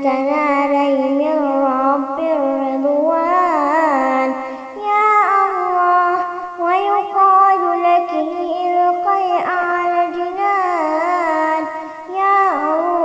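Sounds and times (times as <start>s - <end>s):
girl singing: 0.0s - 13.0s
breath: 4.4s - 4.8s, 6.2s - 6.6s, 11.7s - 12.1s.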